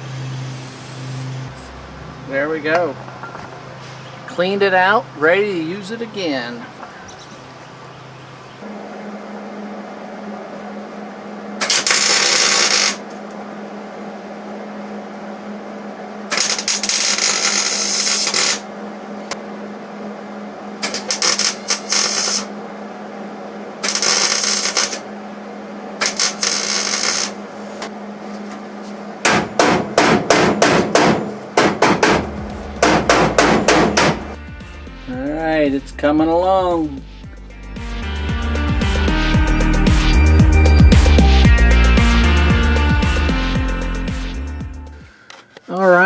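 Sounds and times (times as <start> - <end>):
steady hum: 0.0 - 46.0
pneumatic air tool bursts: 11.6 - 13.0, 16.3 - 18.6, 20.8 - 22.5, 23.8 - 25.0, 26.0 - 27.4
sharp repeated hammering hits: 29.2 - 34.4.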